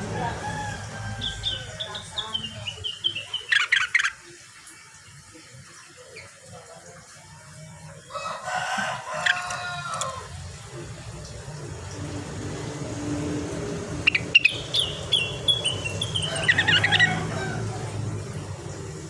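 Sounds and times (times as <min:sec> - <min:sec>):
songbird calling: 0:14.0 - 0:17.3.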